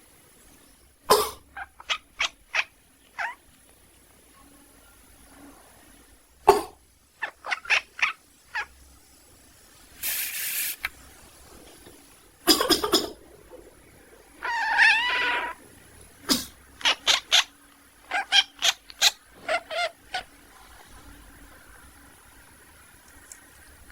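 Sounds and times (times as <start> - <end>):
cat quacking calls: 1.1 - 3.4, 6.5 - 8.7, 14.4 - 15.6, 16.3 - 20.3
cat wavering call: 14.4 - 15.6.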